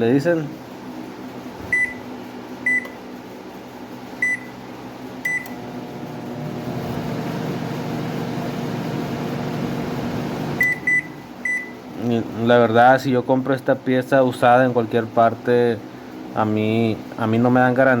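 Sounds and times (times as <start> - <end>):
microwave oven humming: 0.0 - 18.0
microwave keypad beeps: 1.7 - 3.0, 4.2 - 4.6, 5.2 - 5.6, 10.6 - 11.8.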